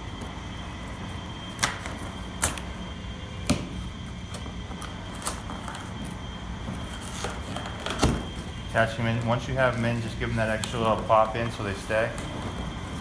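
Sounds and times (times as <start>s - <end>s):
background hum: 0.0s - 13.0s
cardboard tabs snapping: 1.5s - 2.7s, 3.4s - 6.2s.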